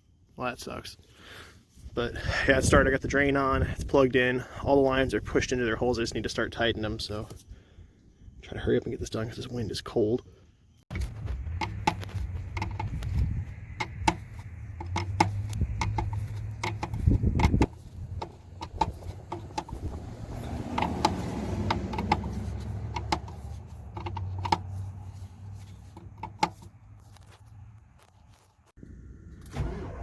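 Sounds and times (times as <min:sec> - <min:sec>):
wind buffeting microphone: 0:11.0 - 0:21.7.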